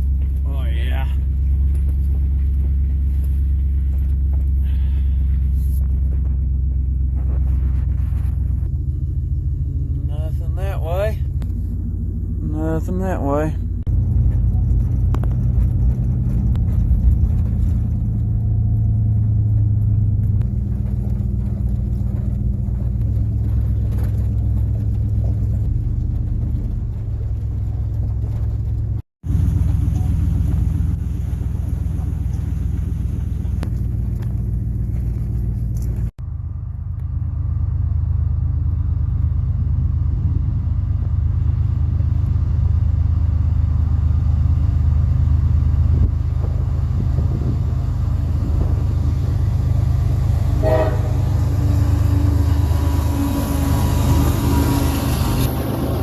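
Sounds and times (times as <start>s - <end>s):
vehicle engine and road rumble: 0.0s - 56.0s.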